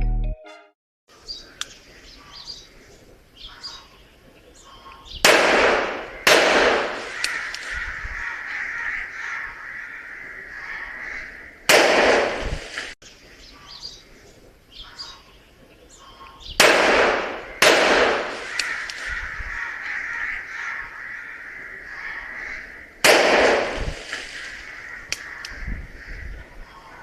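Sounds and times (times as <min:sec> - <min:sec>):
faint bird calls: 0:01.3 - 0:05.2, 0:13.2 - 0:16.6, 0:18.4 - 0:23.0, 0:24.4 - 0:27.0
revolver gunshots with echo: 0:05.2 - 0:07.8, 0:11.7 - 0:13.0, 0:16.6 - 0:19.2, 0:23.0 - 0:24.8.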